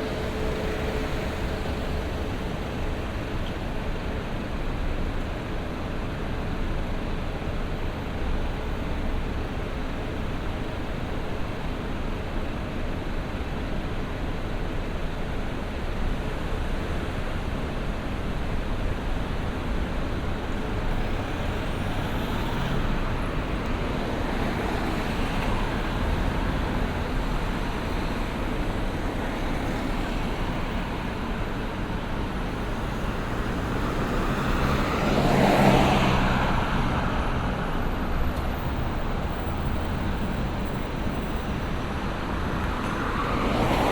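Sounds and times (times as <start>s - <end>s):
passing cars: 0.0s - 6.4s, 18.4s - 43.9s
vehicle passing close by: 32.6s - 38.1s.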